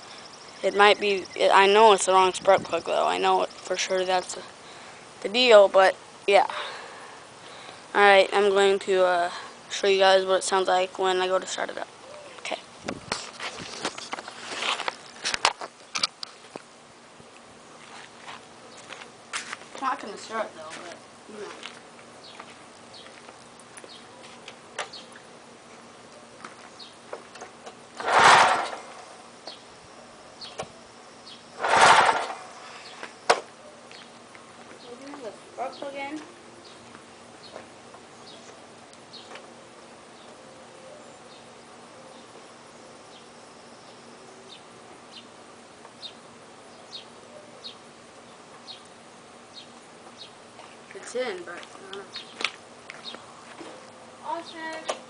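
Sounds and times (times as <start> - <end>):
faint steady hiss: 0.0 - 55.0
mower recoil starter whirring: 28.0 - 29.1, 31.6 - 32.6.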